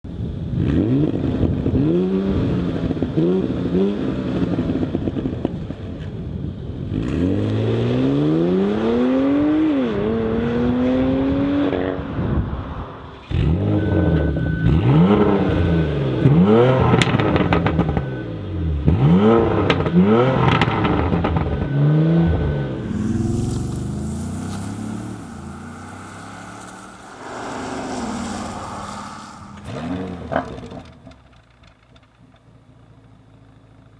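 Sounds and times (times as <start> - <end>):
suv engine revving: 13.2 - 31.1.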